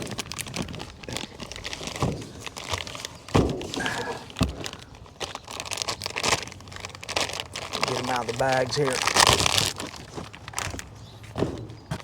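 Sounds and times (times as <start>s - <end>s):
dull thumps: 0.0s - 4.9s, 10.0s - 12.0s
plastic bags crinkling: 0.0s - 11.7s.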